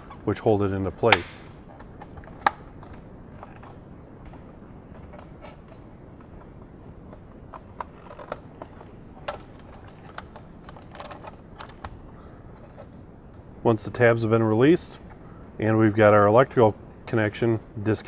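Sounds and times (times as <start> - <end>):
small plastic clicks and creaks: 7.1 - 13.4.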